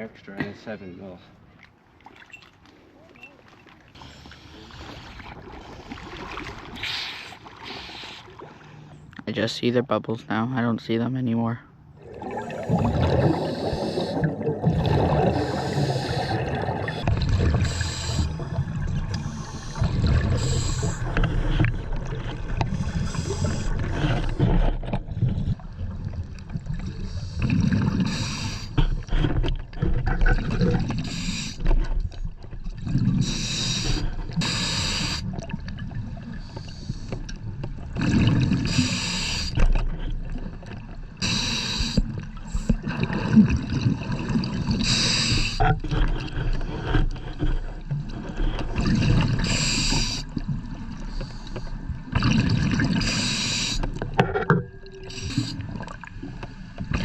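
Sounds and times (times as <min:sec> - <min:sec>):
exhaust bubbles rumbling: 0:11.9 - 0:31.4
regulator inhale hiss: 0:13.2 - 0:14.2, 0:15.3 - 0:17.0, 0:17.6 - 0:18.4, 0:27.0 - 0:28.8, 0:31.0 - 0:31.6, 0:33.2 - 0:35.3, 0:36.4 - 0:37.2, 0:38.6 - 0:39.6, 0:41.2 - 0:42.6, 0:44.8 - 0:45.6, 0:49.3 - 0:50.3, 0:51.0 - 0:51.9, 0:53.0 - 0:54.0, 0:55.1 - 0:55.9.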